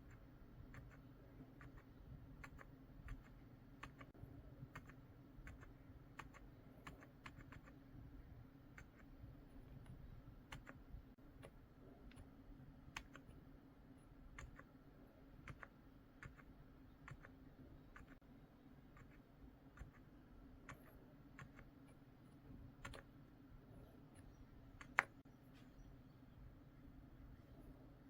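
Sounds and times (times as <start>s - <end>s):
mechanical keyboard typing: 0.0s - 4.1s, 4.7s - 7.8s, 10.5s - 10.8s, 12.9s - 13.4s, 14.3s - 14.7s, 15.4s - 17.3s, 17.9s - 18.2s, 19.8s - 21.7s, 22.8s - 23.1s.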